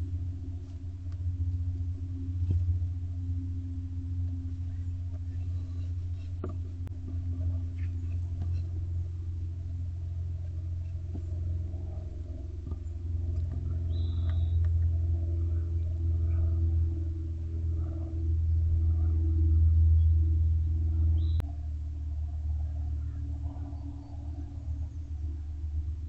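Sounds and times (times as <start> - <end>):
low hum: 0.0 - 26.0.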